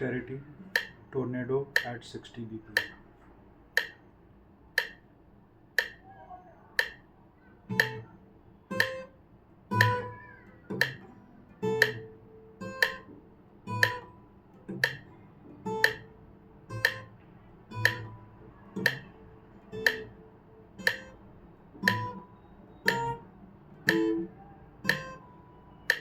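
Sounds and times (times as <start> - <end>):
metronome clicking: 0.7 - 1.0, 1.7 - 2.0, 2.8 - 3.0, 3.8 - 4.0, 4.8 - 5.0, 5.8 - 6.0, 6.8 - 7.0, 7.7 - 8.1, 8.7 - 9.1, 9.7 - 13.1, 13.7 - 17.2, 17.8 - 19.2, 19.8 - 20.2, 20.8 - 21.2, 21.8 - 26.0
guitar plucked notes: 7.7 - 9.1, 9.7 - 26.0.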